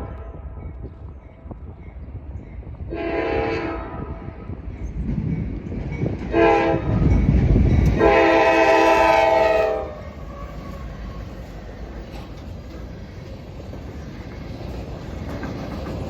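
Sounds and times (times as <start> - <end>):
locomotive rumbling: 0.0 - 16.0
locomotive air horn blasts: 2.9 - 4.3, 6.3 - 7.0, 8.0 - 11.2.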